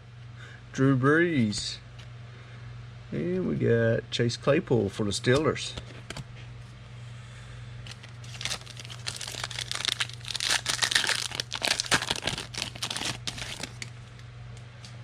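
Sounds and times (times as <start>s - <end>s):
steady low hum: 0.0s - 15.0s
plastic wrapper tearing and crinkling: 7.9s - 14.0s.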